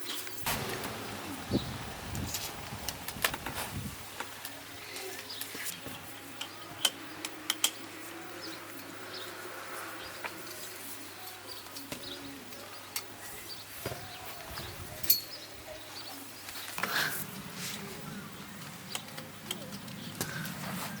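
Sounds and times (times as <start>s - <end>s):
birds chirping: 0.0s - 21.0s
dove cooing: 16.2s - 21.0s.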